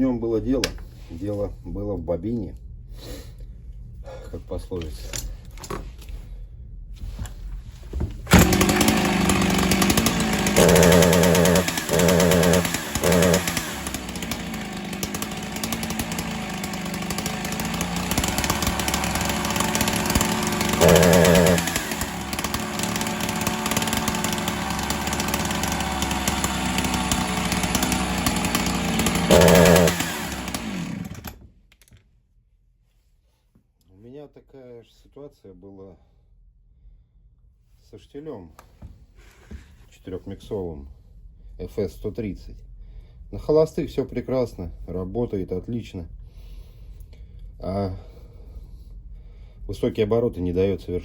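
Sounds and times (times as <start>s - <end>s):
chainsaw running: 8.3s - 31.4s
chainsaw throttle blips: 8.3s - 31.4s.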